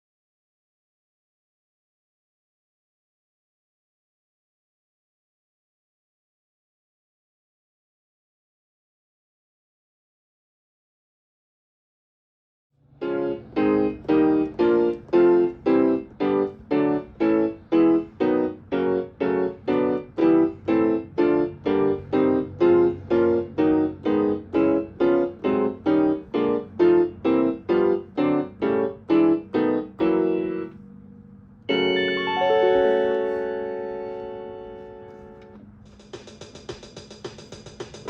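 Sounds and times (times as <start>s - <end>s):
electronic instrument repeated chords: 31.7s - 35.4s.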